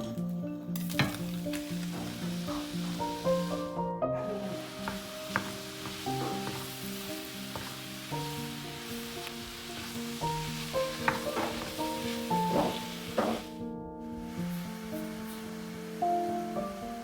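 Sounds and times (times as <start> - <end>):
soft background music: 0.0 - 17.0
food sizzling in a frying pan: 0.8 - 17.0.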